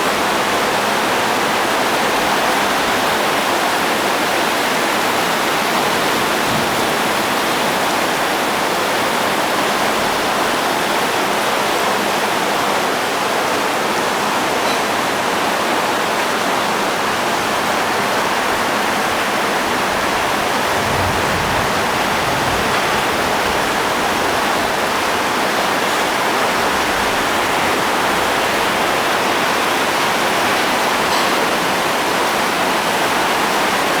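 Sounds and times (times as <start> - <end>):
heavy rain pouring: 0.0 - 34.0.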